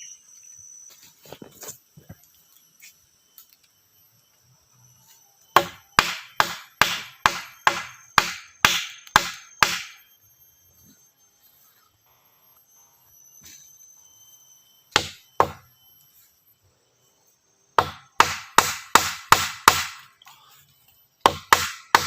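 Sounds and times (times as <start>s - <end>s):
hand tool striking wood: 5.6s - 10.0s, 14.9s - 15.6s, 17.8s - 20.1s, 21.2s - 22.0s.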